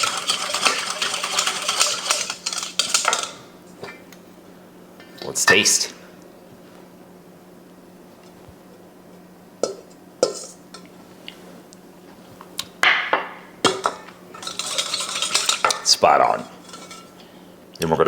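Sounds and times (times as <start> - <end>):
metal utensil clinking on bowl: 0.0 - 4.0, 9.6 - 10.9, 13.7 - 17.1
utensil scraping bowl: 0.0 - 4.1, 9.6 - 10.9, 13.7 - 17.4.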